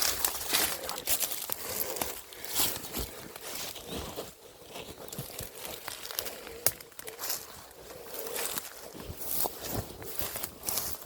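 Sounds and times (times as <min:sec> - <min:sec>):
footsteps through dry undergrowth: 0:00.0 - 0:11.0.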